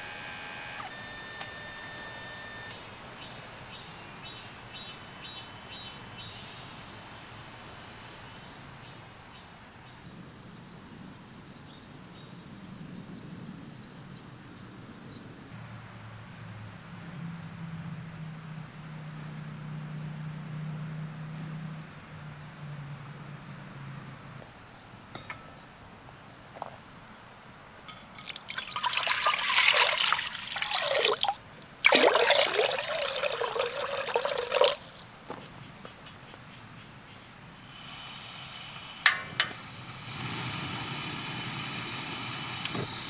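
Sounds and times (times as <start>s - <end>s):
water pouring and splashing: 27.9s - 35.2s.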